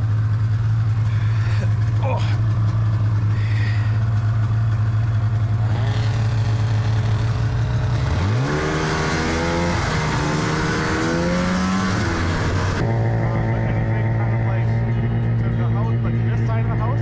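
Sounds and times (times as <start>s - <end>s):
snowmobile engine idling and revving: 0.0s - 17.0s.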